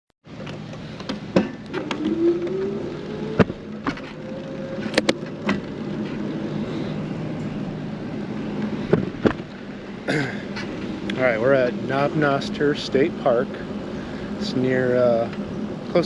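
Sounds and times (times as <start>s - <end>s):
vehicle engine running: 0.3s - 16.0s
sharp clicks and knocks: 0.4s - 2.6s, 3.3s - 6.2s, 8.9s - 9.5s.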